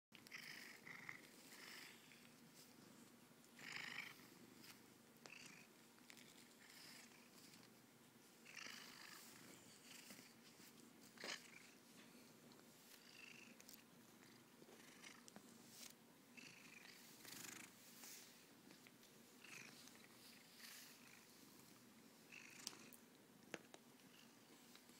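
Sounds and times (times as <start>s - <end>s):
cat purring: 0.2s - 23.1s, 24.0s - 24.9s
brush swishing through fur: 9.1s - 11.2s, 16.9s - 21.7s.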